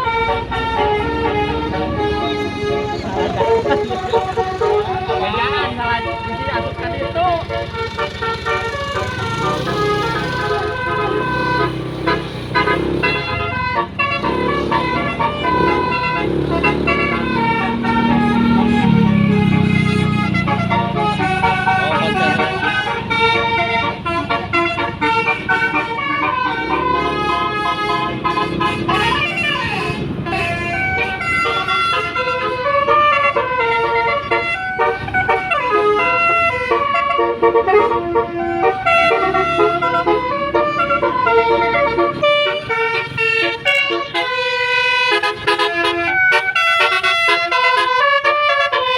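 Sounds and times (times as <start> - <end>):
bus engine running: 0.0 - 48.9
bus horn playing a tune: 0.0 - 48.9.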